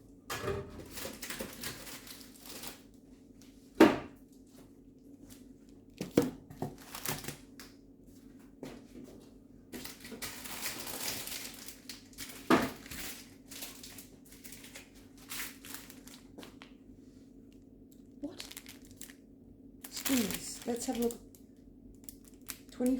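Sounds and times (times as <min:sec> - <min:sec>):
packet crinkling and rustling: 0:00.8 - 0:02.9, 0:06.0 - 0:07.8, 0:09.8 - 0:16.8, 0:17.6 - 0:22.9.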